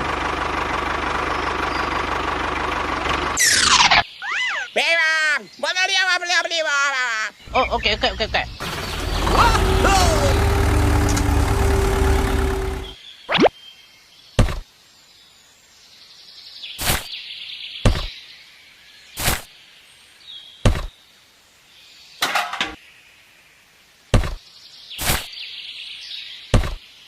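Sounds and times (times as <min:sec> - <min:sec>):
sharp knocks: 0:14.4 - 0:14.6, 0:17.9 - 0:18.1, 0:20.6 - 0:20.9, 0:24.1 - 0:24.4, 0:26.5 - 0:26.8.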